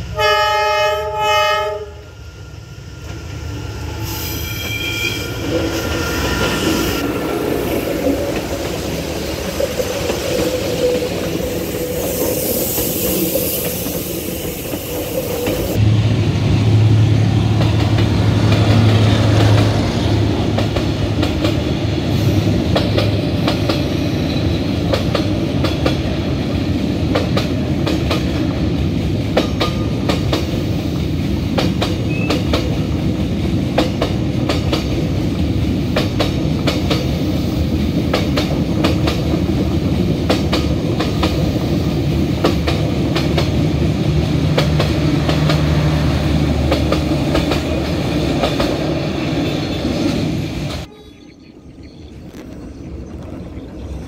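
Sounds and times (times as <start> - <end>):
train rolling past: 0.0 - 54.0
wheels clacking over rail joints: 6.4 - 15.8, 37.9 - 50.9.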